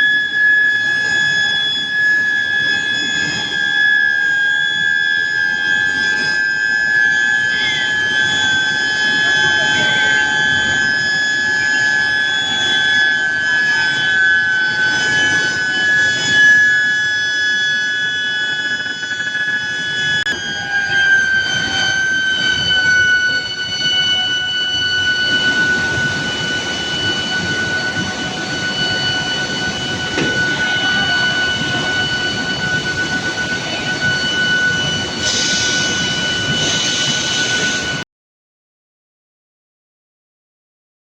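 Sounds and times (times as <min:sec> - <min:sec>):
furnace coil whine: 0:00.0 - 0:38.0
machinery hum: 0:00.0 - 0:38.0.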